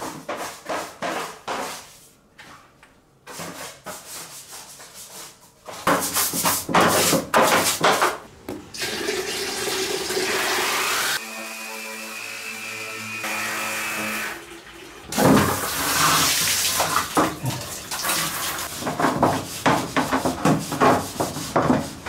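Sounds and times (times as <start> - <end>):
running water spray: 15.1 - 18.8.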